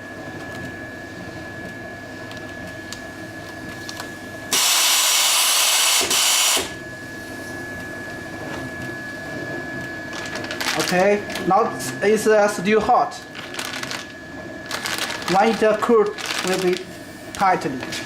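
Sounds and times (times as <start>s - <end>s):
band sealer motor whine: 3.1s - 18.0s
gas hissing from nozzle: 4.5s - 6.7s.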